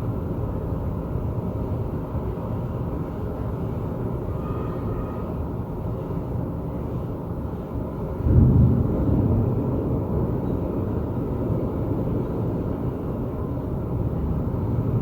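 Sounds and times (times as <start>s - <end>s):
thunder rumbling: 8.2s - 15.0s.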